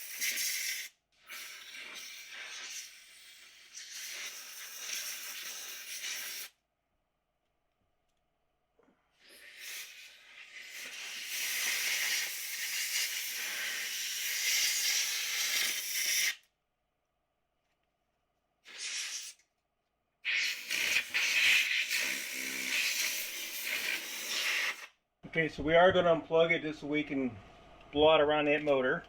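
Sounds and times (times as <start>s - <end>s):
compressed air blow gun blasting: 20.3s - 24.9s.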